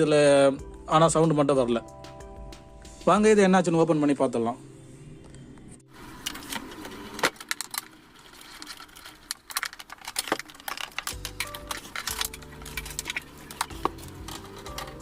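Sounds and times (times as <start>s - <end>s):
screws and screwdriver clinking: 7.5s - 15.0s.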